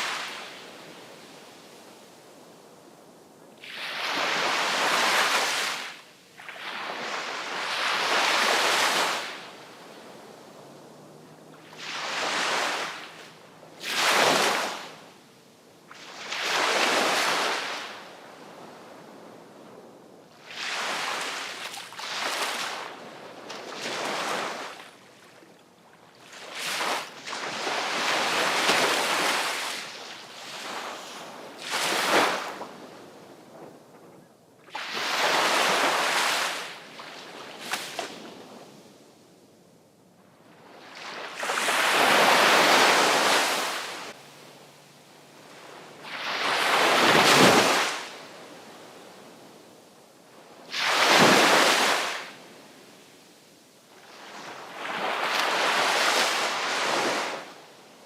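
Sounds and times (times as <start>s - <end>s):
sea waves breaking: 3.6s - 19.1s, 20.4s - 25.4s, 26.0s - 33.8s, 34.7s - 38.6s, 40.6s - 49.4s, 50.6s - 52.4s, 54.0s - 57.7s.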